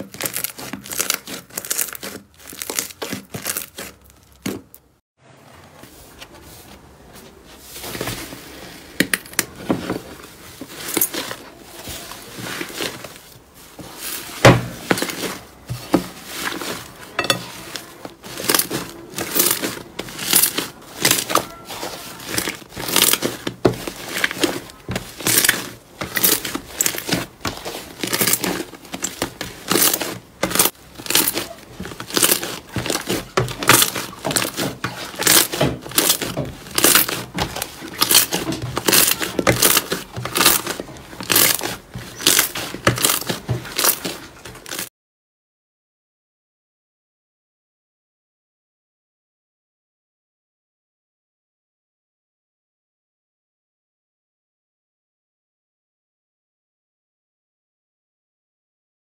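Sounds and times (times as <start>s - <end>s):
slime crackling and popping: 0.0s - 4.4s, 17.4s - 44.9s.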